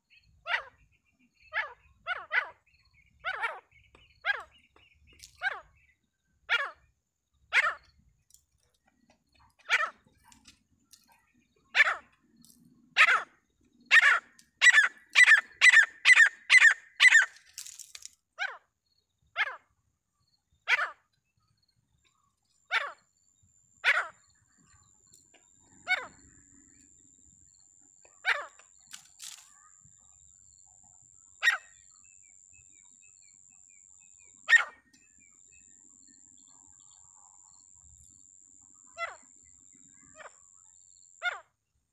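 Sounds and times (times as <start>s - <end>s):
francolin calling: 11.1s - 17.8s, 31.3s - 41.5s.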